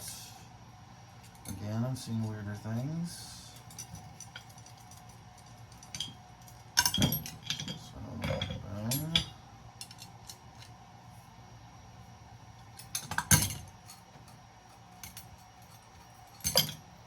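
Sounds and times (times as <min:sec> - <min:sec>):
faint steady hum: 0:00.0 - 0:17.0
metal bars and bolts clinking: 0:03.6 - 0:10.7, 0:12.8 - 0:14.4, 0:15.0 - 0:16.8.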